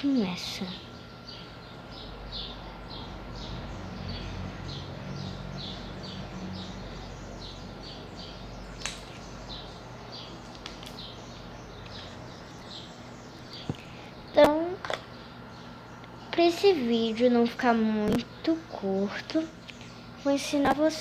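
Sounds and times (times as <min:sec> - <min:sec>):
bird chirping: 0:00.6 - 0:16.3
sharp clicks: 0:08.8 - 0:09.2.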